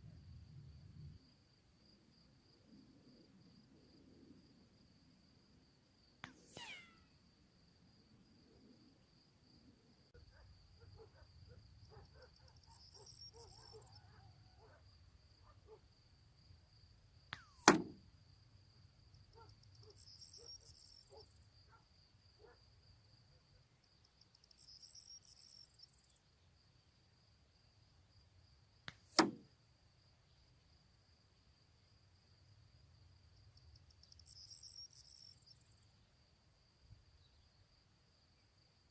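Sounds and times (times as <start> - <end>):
crickets chirping: 0.0 - 28.8, 29.4 - 38.9
air rifle shots: 17.4 - 18.0.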